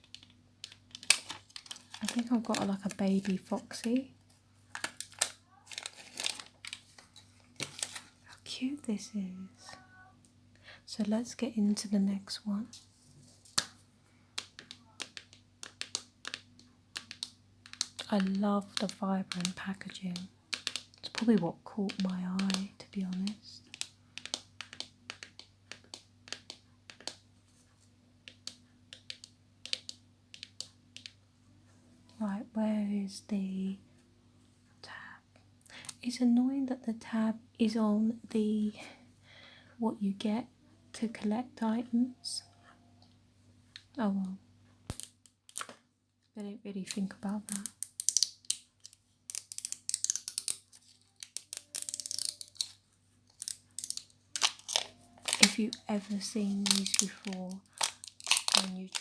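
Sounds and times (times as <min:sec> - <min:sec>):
plastic wrapper crinkling: 0:00.0 - 0:08.4, 0:14.4 - 0:27.2, 0:46.9 - 0:59.0
fingernails tapping on plastic: 0:14.4 - 0:27.2.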